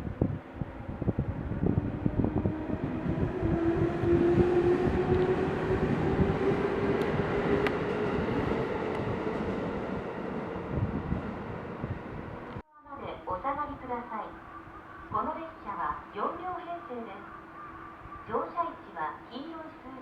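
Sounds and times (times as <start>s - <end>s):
wheels rumbling and clicking on rail: 0.0s - 12.6s
electric train motor whine: 0.9s - 9.9s.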